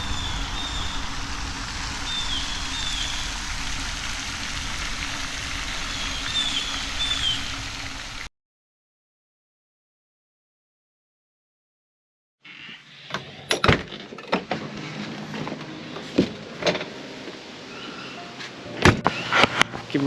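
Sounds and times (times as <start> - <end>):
birds chirping: 0.0 - 8.3, 17.6 - 18.4
low hum: 0.0 - 8.3
steady hiss: 0.0 - 8.3.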